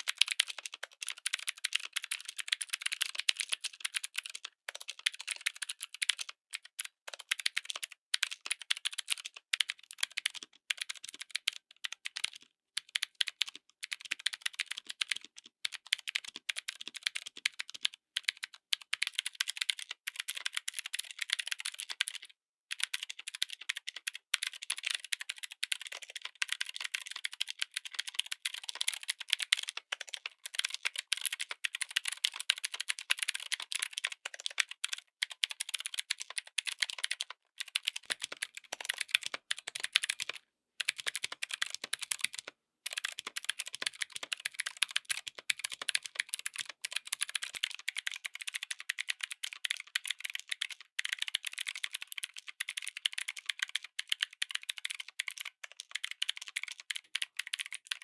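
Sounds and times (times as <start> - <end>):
mechanical keyboard typing: 0.0 - 58.0.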